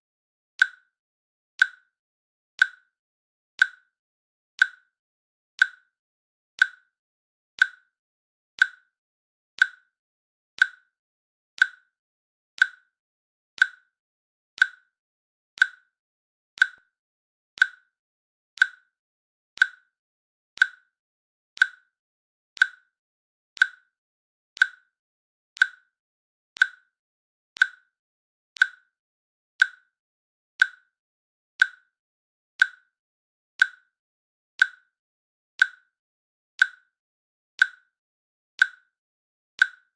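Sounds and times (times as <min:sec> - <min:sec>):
timer ticking clicks: 0:00.6 - 0:01.0, 0:01.6 - 0:02.0, 0:02.6 - 0:03.0, 0:03.6 - 0:04.0, 0:04.6 - 0:05.0, 0:05.6 - 0:06.0, 0:06.6 - 0:07.0, 0:07.6 - 0:08.0, 0:08.6 - 0:09.0, 0:09.6 - 0:10.0, 0:10.6 - 0:11.0, 0:11.6 - 0:12.0, 0:12.6 - 0:13.0, 0:13.6 - 0:14.0, 0:14.6 - 0:15.0, 0:15.6 - 0:16.0, 0:16.6 - 0:17.0, 0:17.6 - 0:18.0, 0:18.6 - 0:19.0, 0:19.6 - 0:20.0, 0:20.6 - 0:21.0, 0:21.6 - 0:22.0, 0:22.6 - 0:23.0, 0:23.6 - 0:24.0, 0:24.6 - 0:25.0, 0:25.6 - 0:26.0, 0:26.6 - 0:27.0, 0:27.6 - 0:28.0, 0:28.6 - 0:29.0, 0:29.6 - 0:30.0, 0:30.6 - 0:31.0, 0:31.6 - 0:32.0, 0:32.6 - 0:33.0, 0:33.6 - 0:34.0, 0:34.6 - 0:35.0, 0:35.6 - 0:36.0, 0:36.6 - 0:37.0, 0:37.6 - 0:38.0, 0:38.6 - 0:39.0, 0:39.6 - 0:39.9.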